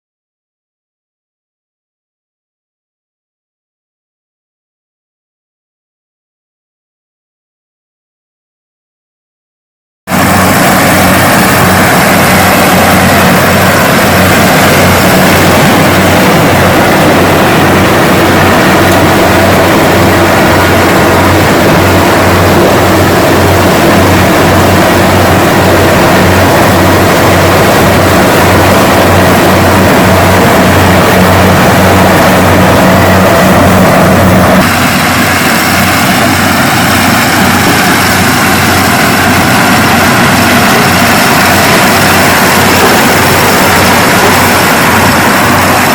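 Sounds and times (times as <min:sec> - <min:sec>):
combine harvester running: 0:10.1 - 0:45.9.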